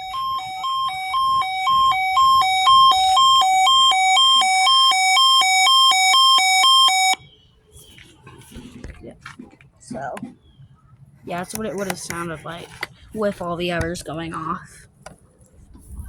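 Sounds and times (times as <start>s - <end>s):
electronic hi-lo alarm: 0.0s - 7.2s.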